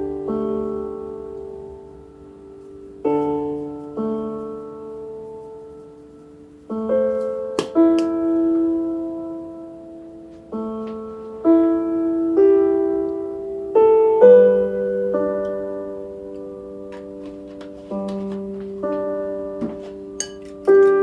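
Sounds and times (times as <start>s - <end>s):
soft slow piano chords: 0.0s - 21.0s.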